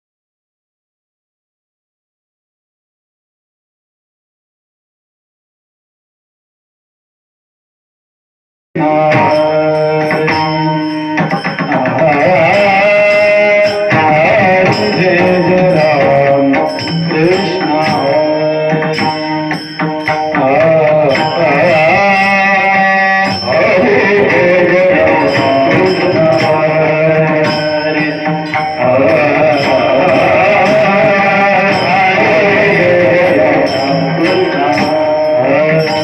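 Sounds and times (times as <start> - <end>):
devotional melody in wavering notes: 8.8 - 36.0
light high percussion strokes: 8.8 - 36.0
pakhawaj drumming: 8.8 - 36.0.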